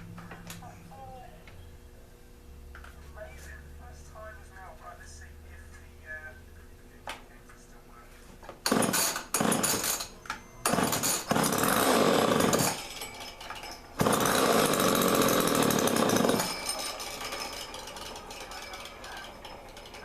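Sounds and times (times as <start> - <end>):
chainsaw engine revving: 8.7 - 10.0, 10.7 - 12.8, 14.0 - 16.8.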